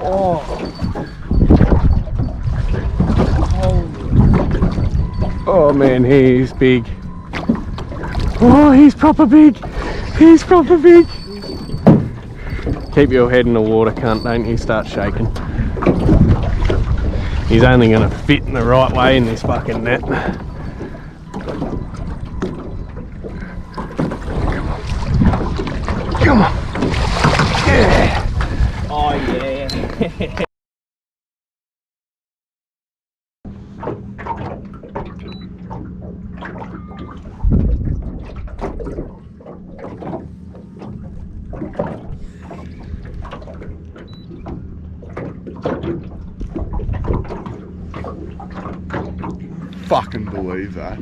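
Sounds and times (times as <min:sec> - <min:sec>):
wind on microphone: 0:00.0 - 0:08.7, 0:14.3 - 0:30.0, 0:37.0 - 0:39.2, 0:46.3 - 0:47.6
water moving around boat: 0:00.0 - 0:30.5, 0:33.5 - 0:51.0.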